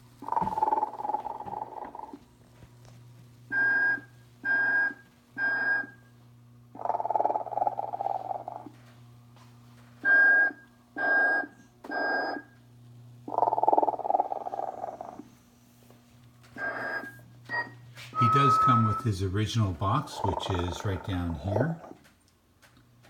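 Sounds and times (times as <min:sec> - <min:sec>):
steady low hum: 0:00.0 - 0:23.0
toy snoring: 0:00.2 - 0:02.2, 0:06.8 - 0:08.7, 0:13.3 - 0:15.3, 0:20.0 - 0:22.0
toy whistling: 0:18.2 - 0:19.1.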